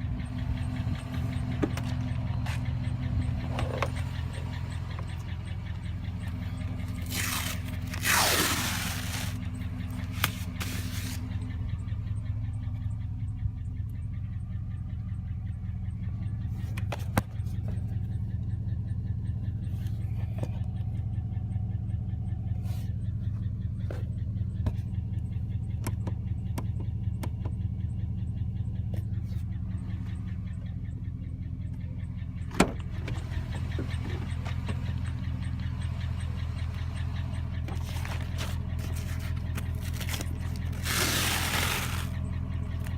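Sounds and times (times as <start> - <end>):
steady engine ticking: 0.0 - 42.9
truck engine idling: 0.0 - 42.9.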